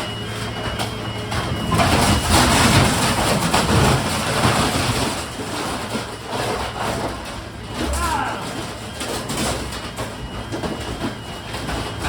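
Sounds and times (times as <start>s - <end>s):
trash crashing in hopper: 0.0s - 12.0s
truck engine hum: 0.0s - 12.0s.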